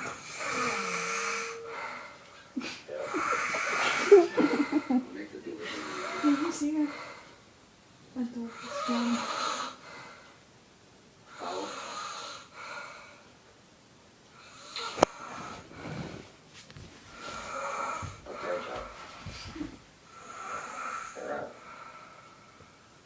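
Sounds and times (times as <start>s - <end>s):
person snoring: 0.0s - 2.2s, 2.9s - 5.0s, 5.6s - 7.1s, 8.5s - 9.8s, 11.3s - 12.6s, 17.2s - 18.6s, 20.1s - 22.0s.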